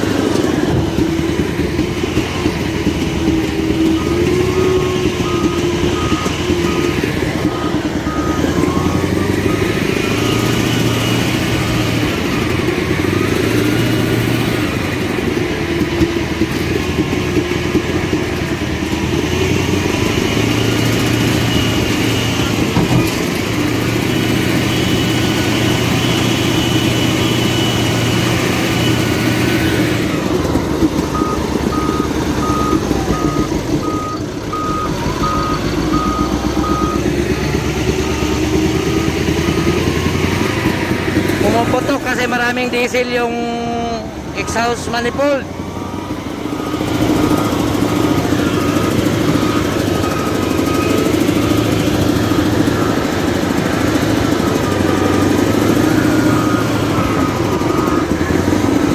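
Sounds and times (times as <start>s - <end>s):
reversing alarm beeping: 0.0s - 58.9s
wheel loader diesel engine: 0.0s - 58.9s.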